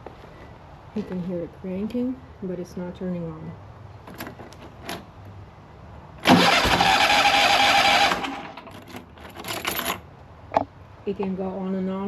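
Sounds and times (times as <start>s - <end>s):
mower engine cranking on starter: 6.2s - 10.0s.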